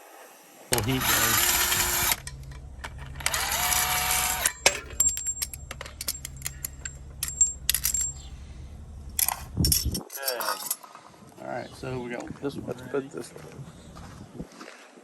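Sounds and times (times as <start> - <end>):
steady low hum: 0.7 - 10.1
metallic clinks and taps: 4.4 - 8.4.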